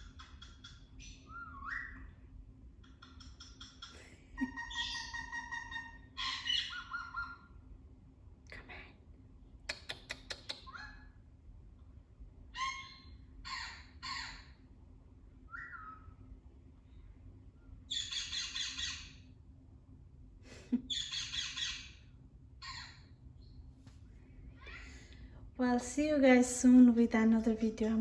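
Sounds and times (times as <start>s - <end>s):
parakeet squawking: 0.0s - 2.0s, 2.8s - 7.6s, 10.5s - 11.1s, 12.5s - 14.6s, 15.6s - 16.1s, 17.9s - 19.2s, 20.9s - 23.2s.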